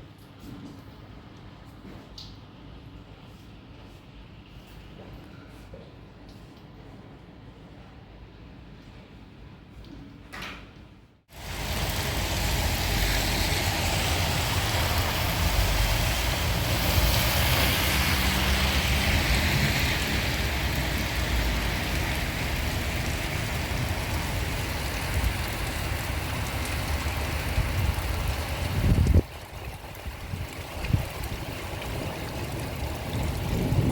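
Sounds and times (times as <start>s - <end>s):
heavy rain splashing: 11.3s - 33.9s.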